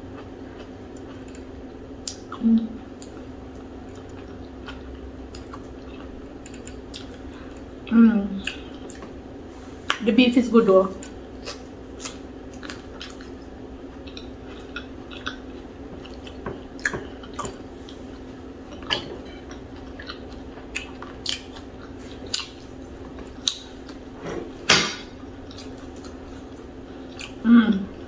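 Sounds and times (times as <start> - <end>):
faint steady hum: 0.0 - 28.0
chewing and wet mouth smacks: 3.0 - 7.6, 11.0 - 18.0, 18.7 - 24.0, 25.1 - 27.4.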